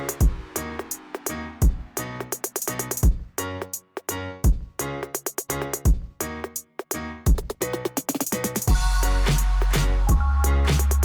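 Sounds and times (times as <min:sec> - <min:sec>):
electronic music with heavy bass: 0:00.0 - 0:03.1, 0:08.7 - 0:11.0.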